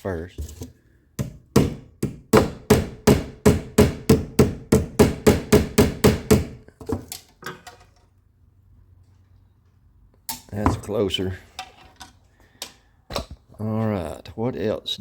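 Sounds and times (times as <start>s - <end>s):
hammer beating metal: 1.6s - 6.6s.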